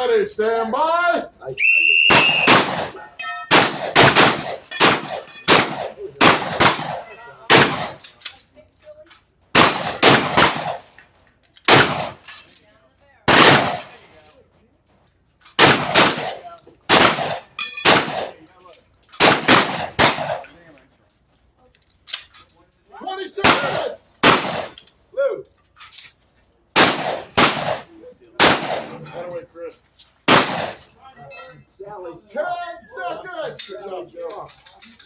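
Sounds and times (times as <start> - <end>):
shotgun fire: 2.1 - 8.0, 9.6 - 10.9, 11.7 - 12.2, 13.3 - 14.0, 15.6 - 18.4, 19.2 - 20.4, 23.4 - 24.8, 26.8 - 29.0, 30.3 - 30.8
steel targets clanging: 2.2 - 8.6, 15.4 - 20.6, 21.9 - 29.4.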